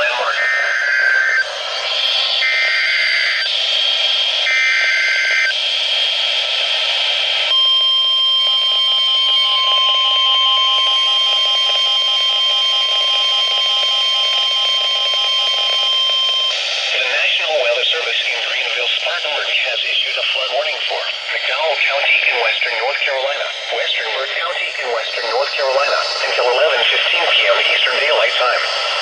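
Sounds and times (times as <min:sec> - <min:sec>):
radio static: 0:00.0 - 0:29.0
steady attention tone: 0:00.0 - 0:29.0.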